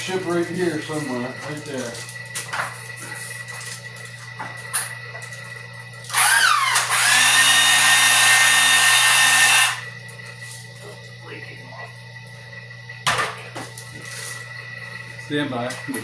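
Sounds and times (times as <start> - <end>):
machine motor whining: 6.0 - 10.0.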